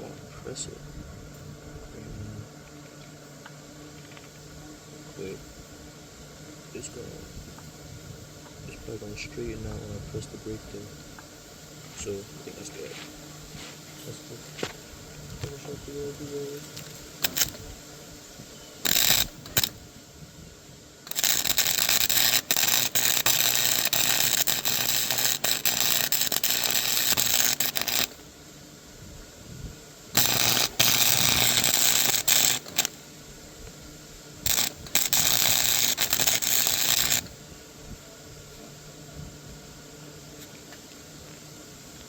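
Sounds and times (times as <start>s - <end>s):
rapid ratcheting clicks: 16.8s - 17.6s, 18.8s - 19.8s, 21.1s - 28.2s, 30.2s - 33.0s, 34.5s - 37.3s.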